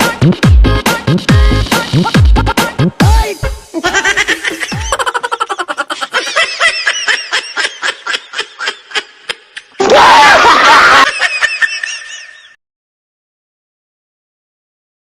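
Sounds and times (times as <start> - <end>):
high-pitched giggling: 3.7 - 9.8.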